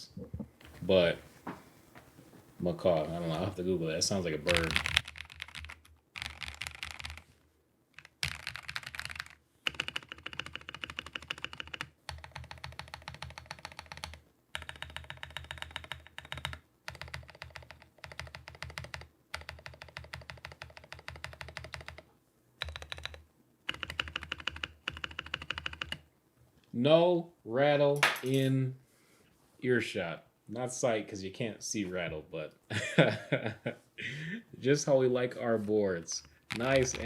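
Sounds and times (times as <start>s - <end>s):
fast typing on mechanical keyboard: 4.5s - 7.2s, 8.0s - 22.0s, 22.6s - 26.0s, 36.5s - 37.0s.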